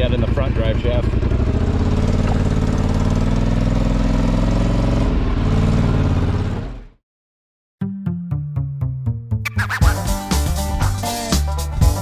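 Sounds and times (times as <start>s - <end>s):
atv engine running: 0.0s - 6.9s.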